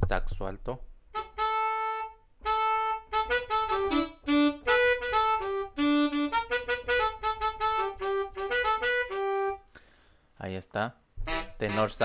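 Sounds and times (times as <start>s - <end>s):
saxophone melody: 1.1s - 9.7s, 11.2s - 12.0s.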